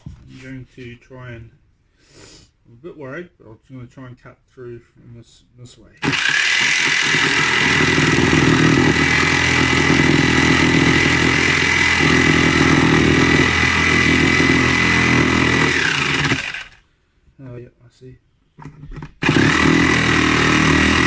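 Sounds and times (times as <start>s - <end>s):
electric jigsaw sawing wood: 6.0s - 16.8s, 19.2s - 21.0s.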